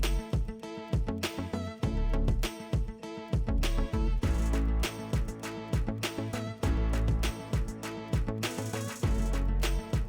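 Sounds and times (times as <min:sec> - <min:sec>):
funk music with heavy bass: 0:00.0 - 0:00.3, 0:03.5 - 0:10.0.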